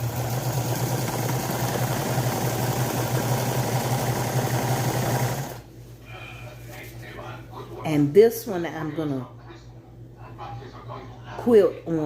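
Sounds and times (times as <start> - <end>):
sewing machine running: 0.0 - 5.7.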